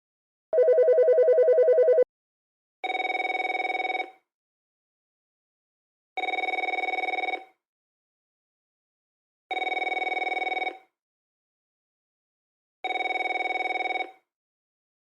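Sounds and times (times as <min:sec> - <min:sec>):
bright telephone ring: 0:00.6 - 0:02.0
warbling two-tone telephone ring: 0:00.6 - 0:02.0.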